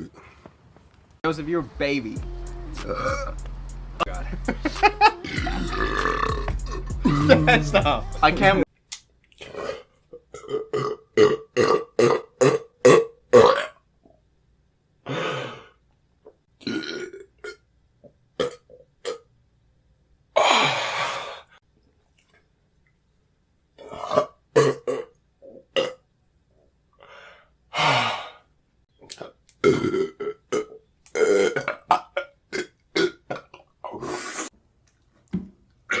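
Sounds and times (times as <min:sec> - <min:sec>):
men burping: 0:02.8 - 0:03.4, 0:04.0 - 0:08.0, 0:29.6 - 0:34.0.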